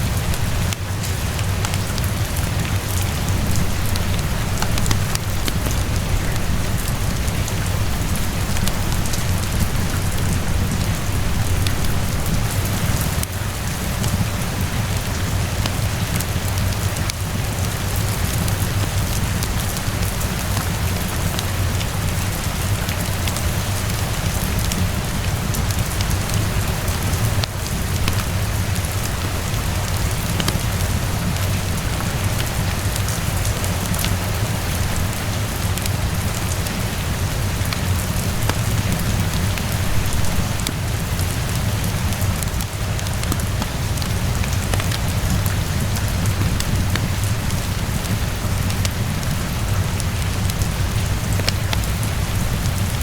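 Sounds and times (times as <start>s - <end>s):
constant low rumble: 0.0s - 53.0s
steady rainfall: 0.0s - 53.0s
fireplace crackle: 0.1s - 17.4s, 34.8s - 53.0s.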